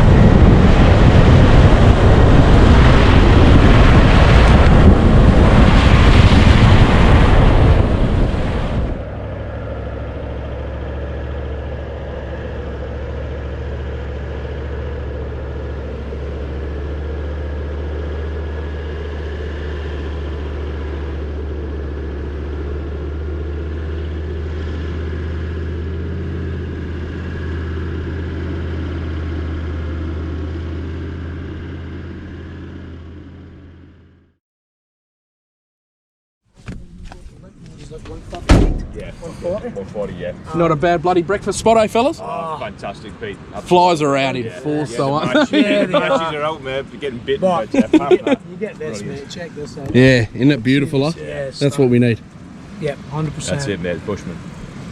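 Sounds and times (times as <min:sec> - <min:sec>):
wind buffeting microphone: 0:00.0 - 0:11.2
car engine droning: 0:00.0 - 0:34.4, 0:36.6 - 0:54.9.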